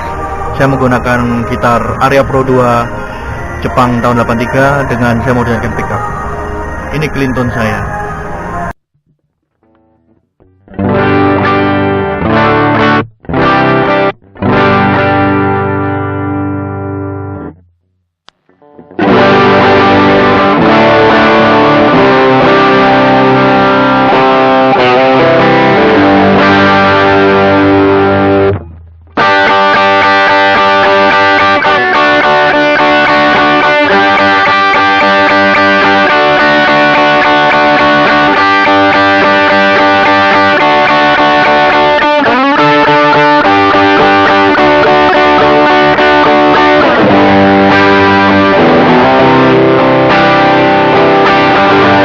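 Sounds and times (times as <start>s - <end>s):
electric guitar playing: 0.0s - 8.8s, 9.4s - 52.0s.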